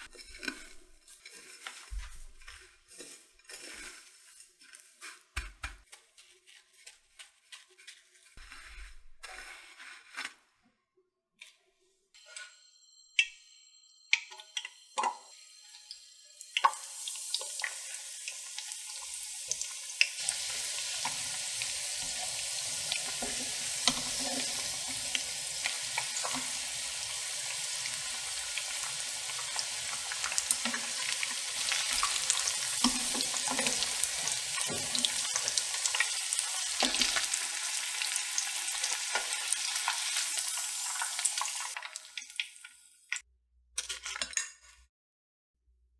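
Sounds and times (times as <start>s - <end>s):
hot oil sizzling and crackling: 14.1s - 43.2s.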